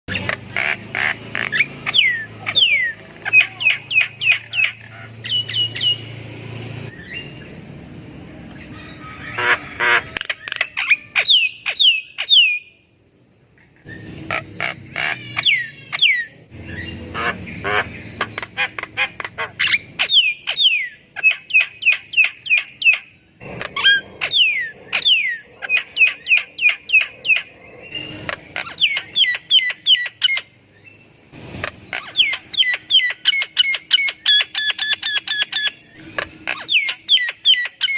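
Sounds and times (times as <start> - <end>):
harsh squawky bird notes: 13.8 - 30.6.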